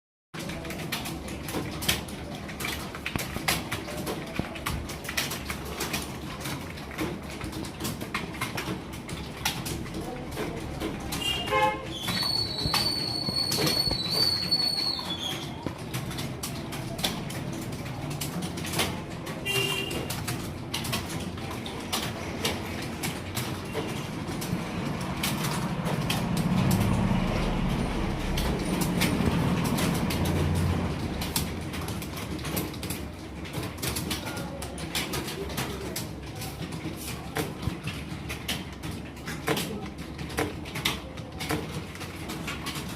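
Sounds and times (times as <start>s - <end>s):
keyboard keys typing: 0.4s - 42.9s.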